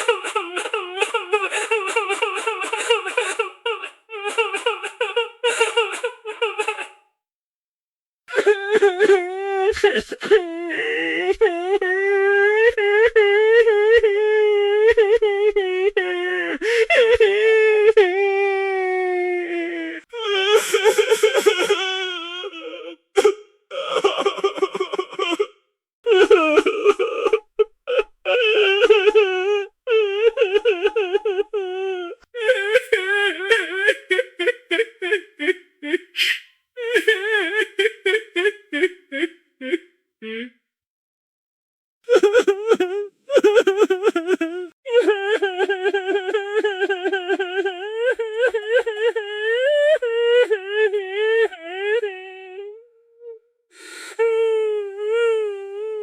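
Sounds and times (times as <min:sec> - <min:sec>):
person crying and whimpering: 0:00.0 - 0:07.0, 0:26.1 - 0:40.6, 0:42.1 - 0:53.4
person sobbing: 0:00.0 - 0:07.0, 0:26.1 - 0:40.6, 0:42.1 - 0:52.8.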